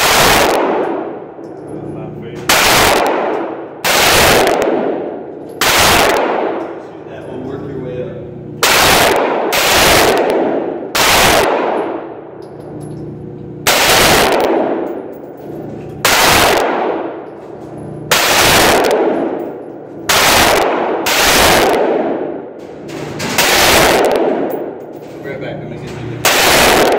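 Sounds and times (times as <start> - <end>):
rifle shots echoing: 0.0 - 1.4, 2.5 - 6.8, 8.6 - 12.3, 13.6 - 15.2, 16.0 - 17.3, 18.0 - 24.8, 26.2 - 26.9.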